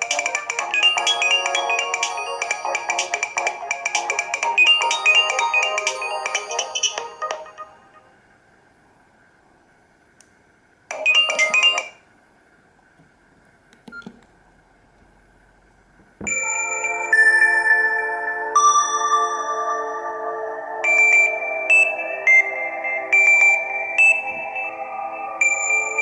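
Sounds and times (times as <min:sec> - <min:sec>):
phone ringtone melodies: 0:00.0 - 0:08.1, 0:10.9 - 0:12.0, 0:16.3 - 0:26.0.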